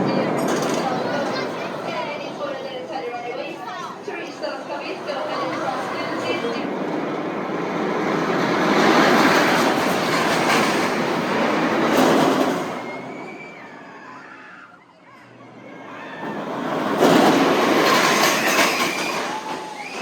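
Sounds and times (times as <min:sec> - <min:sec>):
roller coaster rattle: 0:00.0 - 0:20.0
roller coaster rushing rumble: 0:00.0 - 0:20.0.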